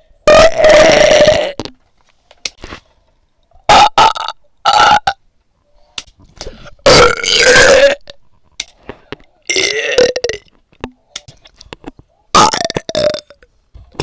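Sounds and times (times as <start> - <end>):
person burping loudly: 0.2 - 1.8, 3.6 - 5.2, 6.8 - 8.2, 9.4 - 10.5, 12.3 - 13.5.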